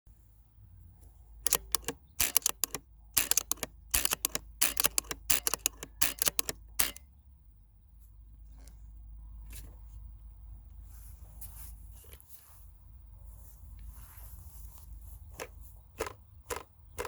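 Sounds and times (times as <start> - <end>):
sharp mechanical clicks: 1.4 - 7.1, 16.0 - 17.0.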